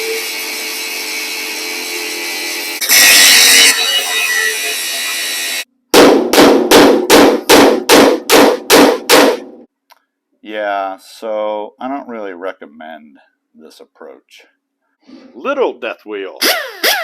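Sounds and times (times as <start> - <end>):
grinder wheel cutting metal: 0.0 - 5.7.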